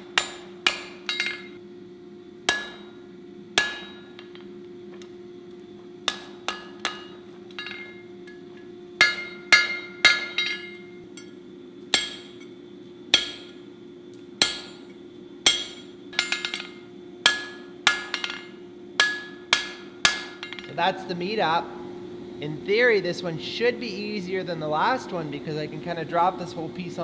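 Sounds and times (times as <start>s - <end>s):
hammer striking steel on anvil: 0.0s - 1.6s, 2.5s - 4.5s, 6.0s - 20.8s
steady low hum: 0.0s - 27.0s.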